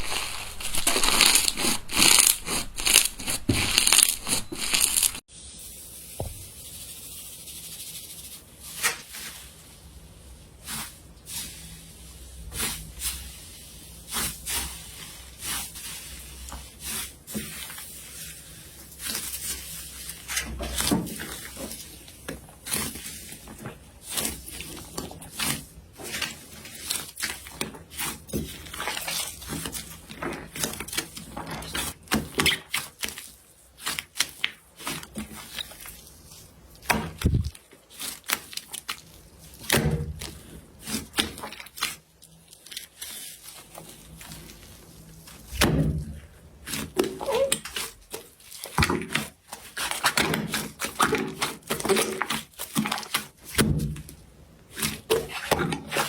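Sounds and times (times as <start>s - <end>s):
slime squeezed by hand crackling: 0.0s - 5.2s, 47.0s - 47.9s.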